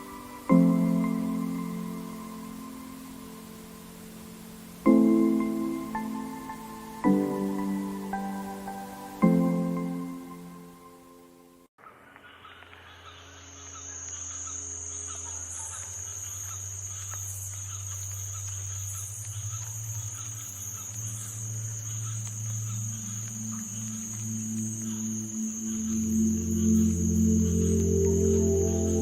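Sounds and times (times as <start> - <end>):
high cricket-like trill: 13.4 - 29.0
low droning hum: 18.8 - 29.0.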